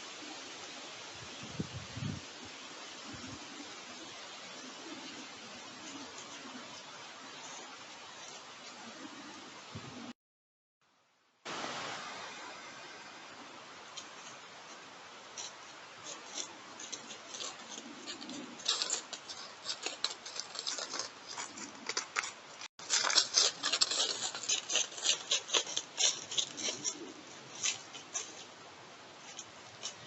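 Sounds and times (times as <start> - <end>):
dry leaves crunching under steps: 15.4 - 28.6.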